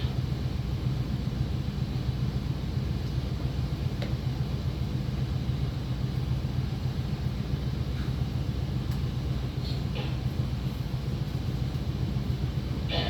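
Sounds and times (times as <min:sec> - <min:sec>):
low hum and rumble: 0:00.0 - 0:13.0.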